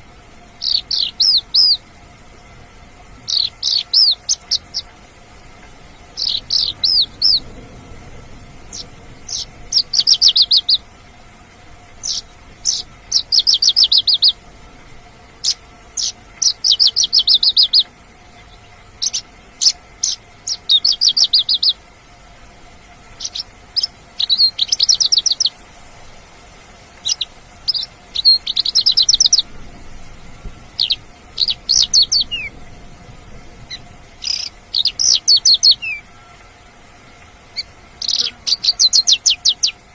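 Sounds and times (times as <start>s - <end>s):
lark singing trills: 0.6s - 1.8s, 3.2s - 4.9s, 5.9s - 7.5s, 8.6s - 10.9s, 12.0s - 14.4s, 15.4s - 21.8s, 23.2s - 25.6s, 27.0s - 29.6s, 30.8s - 32.6s, 33.7s - 36.4s, 37.5s - 39.8s.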